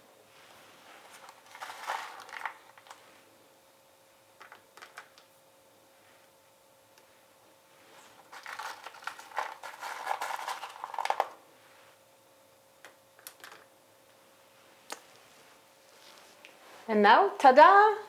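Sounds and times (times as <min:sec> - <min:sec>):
kitchen items clicking and rattling: 0:01.5 - 0:03.0, 0:08.3 - 0:11.4.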